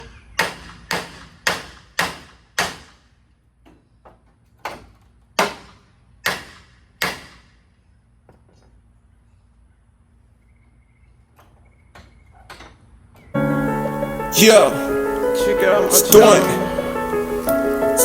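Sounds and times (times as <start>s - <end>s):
sharp loud knocks: 0.4s - 3.0s, 5.4s - 7.4s.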